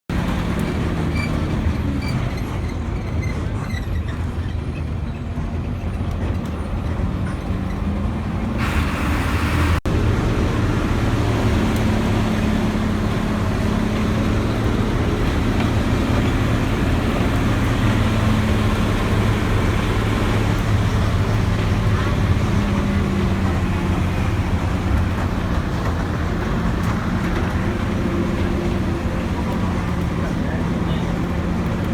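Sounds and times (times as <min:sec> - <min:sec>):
road noise: 0:00.1 - 0:31.9
vehicle engine running: 0:06.9 - 0:31.9.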